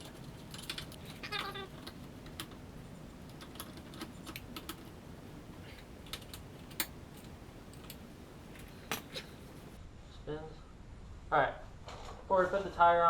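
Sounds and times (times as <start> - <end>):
low steady hum: 0.0 - 9.8
tools and metal parts tapping: 0.0 - 9.8.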